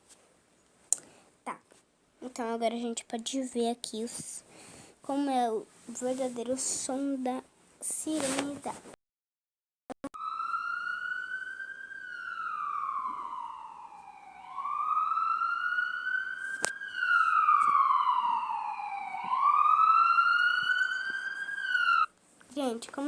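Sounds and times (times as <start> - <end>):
ambulance siren wailing: 10.2 - 22.1.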